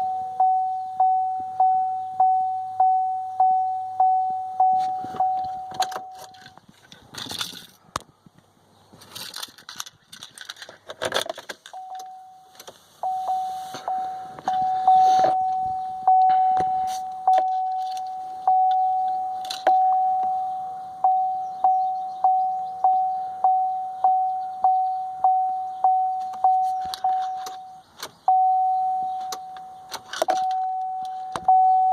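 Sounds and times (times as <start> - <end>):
car warning chime dinging: 0.0 - 6.6, 11.7 - 31.9
clicks and jingling: 5.1 - 7.8, 9.0 - 12.2, 14.4 - 20.0, 26.2 - 28.1, 29.2 - 31.4.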